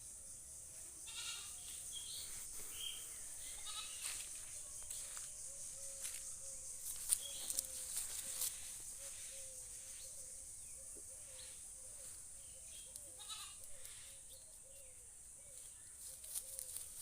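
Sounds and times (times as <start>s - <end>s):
steady high hiss: 0.0s - 14.3s
goat bleating: 1.0s - 1.6s, 3.6s - 4.0s, 13.2s - 13.6s
small repeated chirps: 1.1s - 14.9s.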